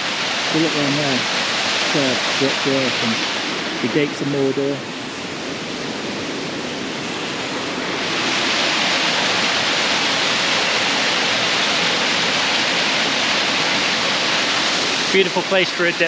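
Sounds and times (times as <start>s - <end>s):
waterfall roaring: 0.0s - 16.0s.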